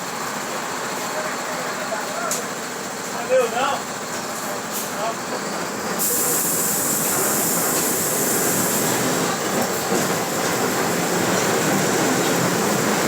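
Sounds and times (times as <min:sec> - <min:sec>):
bus ride noise: 0:00.0 - 0:13.0.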